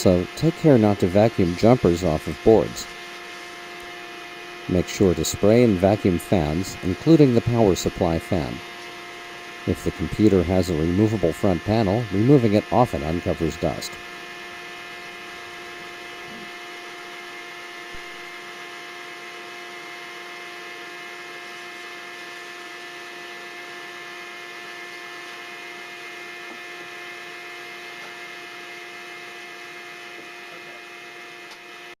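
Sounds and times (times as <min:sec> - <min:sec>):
electrical hum: 0:00.0 - 0:32.0
small click: 0:31.4 - 0:31.7.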